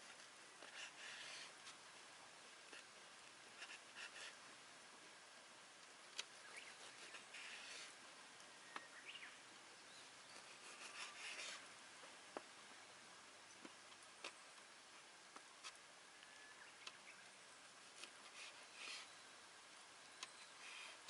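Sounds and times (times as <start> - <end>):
knife scraping rustles: 10.4 - 11.7.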